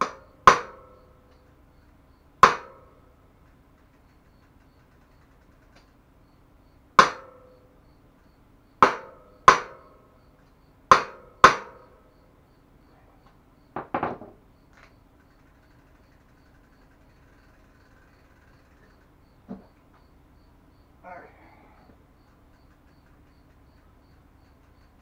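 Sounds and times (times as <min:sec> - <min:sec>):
hammer striking metal: 0:00.0 - 0:01.0, 0:02.4 - 0:02.9, 0:07.0 - 0:07.5, 0:08.8 - 0:09.9, 0:10.9 - 0:11.9
light clatter of knocks: 0:13.7 - 0:16.9.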